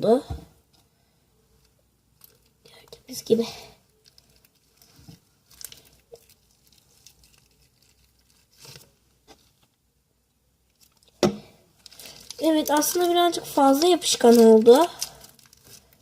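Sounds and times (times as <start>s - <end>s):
slime squishing and tearing: 4.0s - 9.0s, 11.8s - 16.0s.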